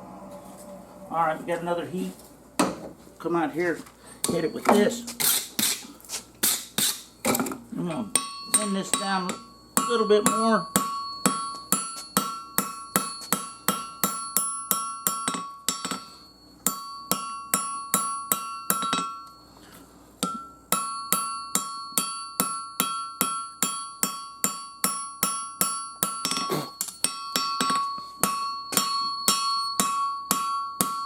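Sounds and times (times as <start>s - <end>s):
hammer on steel on anvil: 8.1s - 19.3s, 20.2s - 31.0s.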